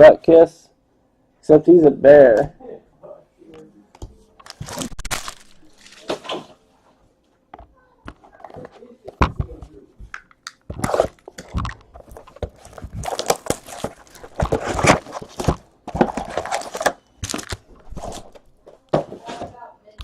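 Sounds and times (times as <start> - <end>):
wrappers tearing and crinkling: 4.4 - 6.5, 12.0 - 18.6.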